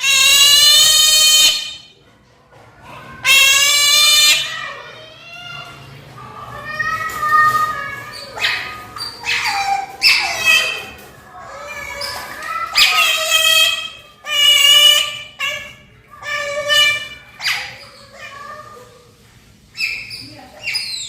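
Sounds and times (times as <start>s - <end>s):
otter high-pitched squeaking: 19.7s - 21.0s.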